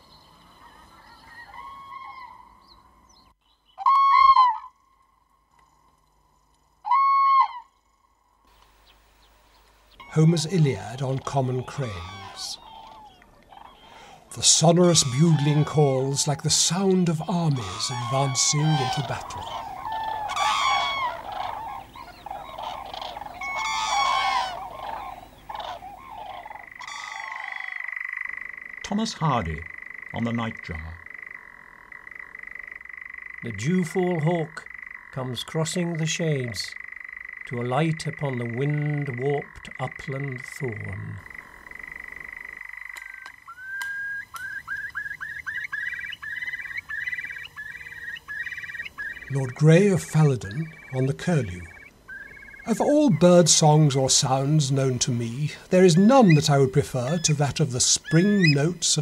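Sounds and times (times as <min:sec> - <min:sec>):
cranes trumpeting calls: 0:00.0 - 0:03.0, 0:03.7 - 0:05.8, 0:06.6 - 0:08.9, 0:09.8 - 0:35.3, 0:36.2 - 0:59.0
curlew whistled song: 0:00.0 - 0:05.0, 0:06.5 - 0:08.1, 0:17.2 - 0:28.6, 0:41.9 - 0:53.2, 0:55.8 - 0:59.0
nightjar churring trill: 0:09.9 - 0:59.0
high churring trill: 0:14.3 - 0:35.6
sharp bird clicks: 0:42.7 - 0:49.3.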